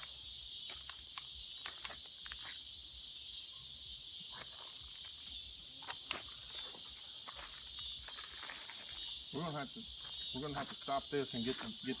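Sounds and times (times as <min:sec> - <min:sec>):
high-pitched insect chorus: 0:00.0 - 0:12.0
rustles: 0:04.2 - 0:09.4.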